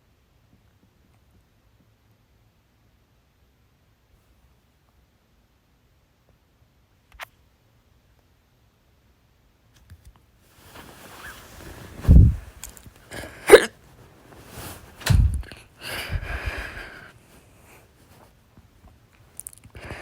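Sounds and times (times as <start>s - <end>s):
woman hiccuping: 13.2s - 13.7s
breath: 14.3s - 18.3s, 19.8s - 20.0s.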